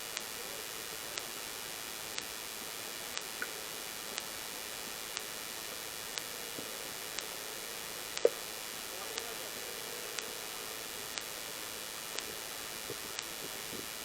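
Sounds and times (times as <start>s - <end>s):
recording hiss: 0.0s - 14.0s
faint clicks: 1.1s - 1.4s, 2.1s - 4.4s, 5.0s - 14.0s
faint distant voices: 8.8s - 13.6s.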